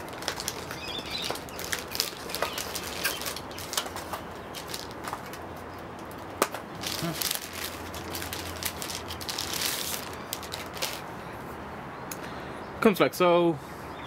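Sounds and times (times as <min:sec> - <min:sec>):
packaging rustling and crinkling: 0:00.0 - 0:11.0.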